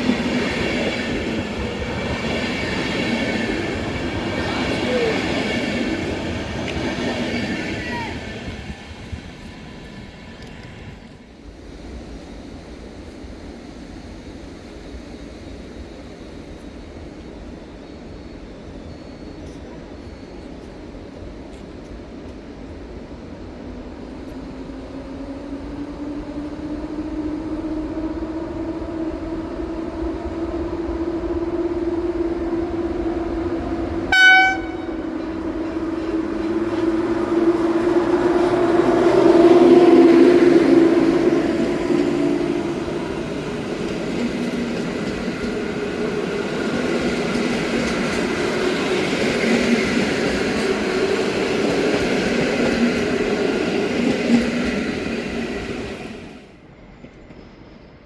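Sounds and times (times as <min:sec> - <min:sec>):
electric locomotive humming: 0:00.0 - 0:58.0
train horn blast: 0:34.0 - 0:42.7.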